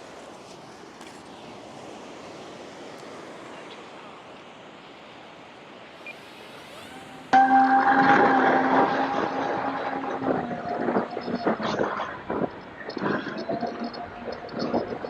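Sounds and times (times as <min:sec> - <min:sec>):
ocean surf: 0:00.0 - 0:15.0
wind: 0:00.0 - 0:15.0.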